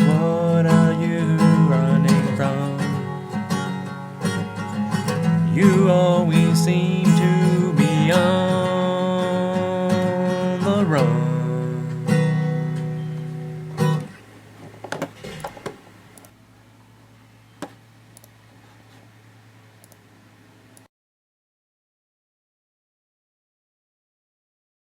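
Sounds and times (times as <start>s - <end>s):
acoustic guitar strumming chords: 0.0s - 14.2s
faint steady hum: 0.0s - 20.9s.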